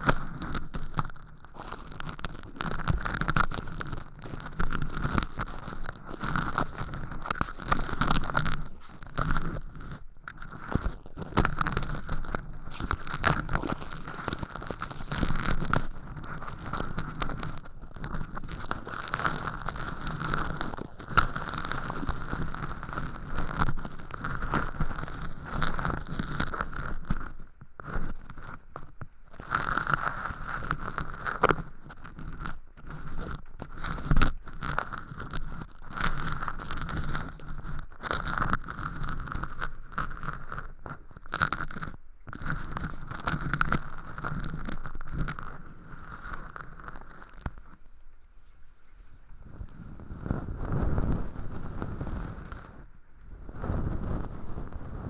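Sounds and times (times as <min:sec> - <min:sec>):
ear pick scraping crispy fake earwax: 0:00.0 - 0:26.7.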